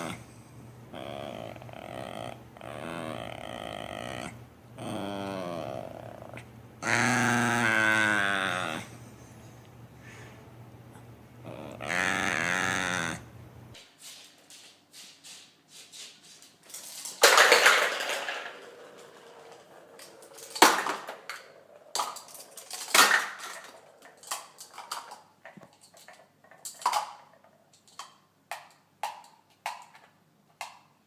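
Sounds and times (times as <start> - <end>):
hard objects clattering: 16.7 - 30.8.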